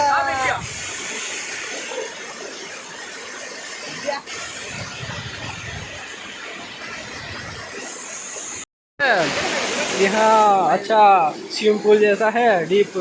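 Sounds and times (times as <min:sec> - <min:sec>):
waterfall roar: 0:09.1 - 0:13.0.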